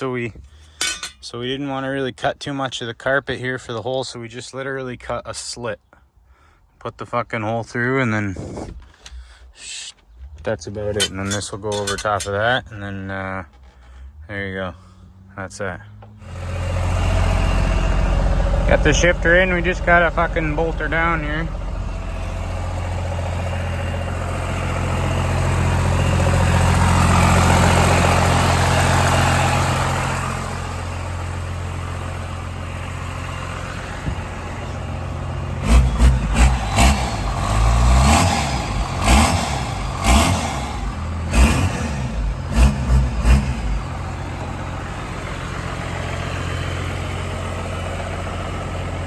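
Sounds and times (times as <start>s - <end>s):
truck engine running and revving: 15.9s - 49.0s.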